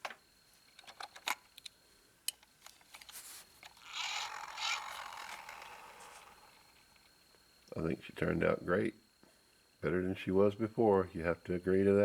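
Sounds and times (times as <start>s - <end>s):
toy car scraping and rolling: 3.7s - 6.8s.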